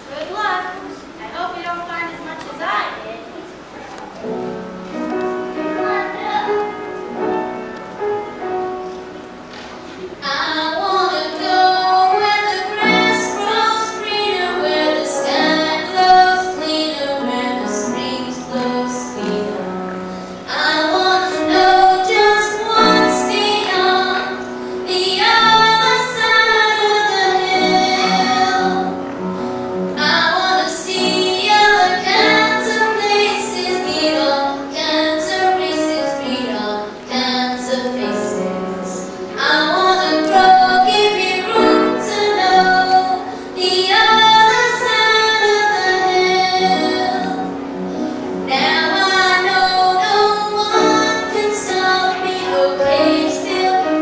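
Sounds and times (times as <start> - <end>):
instrumental backing track: 3.7 - 54.0
girl singing: 5.6 - 6.8, 10.2 - 19.7, 20.3 - 29.0, 30.0 - 47.6, 48.4 - 54.0.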